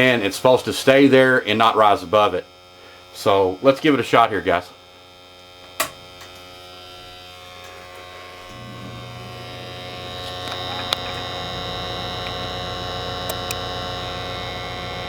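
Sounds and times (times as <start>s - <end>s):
furnace inducer motor humming: 0.0s - 15.0s
sharp click: 13.3s - 13.6s.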